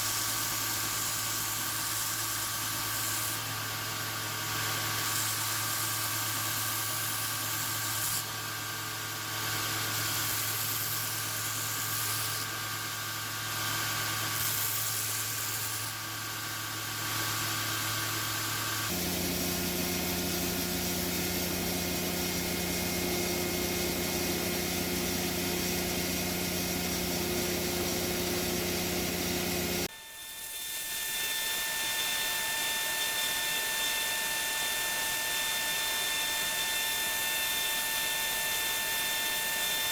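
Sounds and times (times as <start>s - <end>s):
power tools humming: 15.5s - 29.9s.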